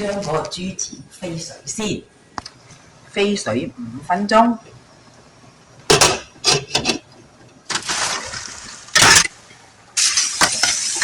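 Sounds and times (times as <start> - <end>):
utensils clinking on pot: 5.9 - 7.0, 9.0 - 9.3
utensils clattering: 5.9 - 7.1, 7.7 - 9.3
splashing: 7.7 - 9.3
food sizzling: 7.7 - 11.0.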